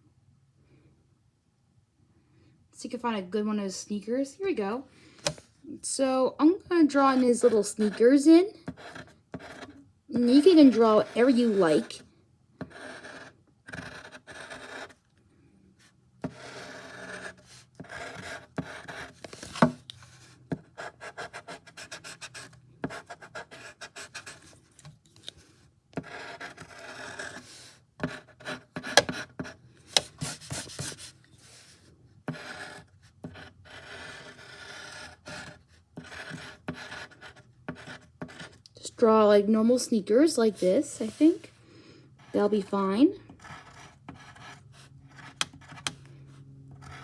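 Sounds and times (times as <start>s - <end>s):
drawing tool scratching: 7.0s - 12.0s, 12.6s - 15.0s, 16.2s - 24.6s, 26.0s - 38.6s, 43.4s - 46.0s, 46.7s - 47.0s.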